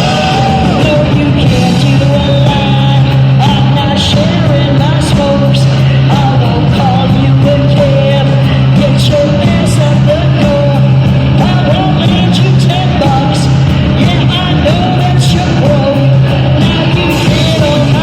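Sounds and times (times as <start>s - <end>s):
drums with cymbal hits: 0.0s - 18.0s
repeating bass line: 0.0s - 18.0s
wavering lead guitar line: 0.0s - 18.0s.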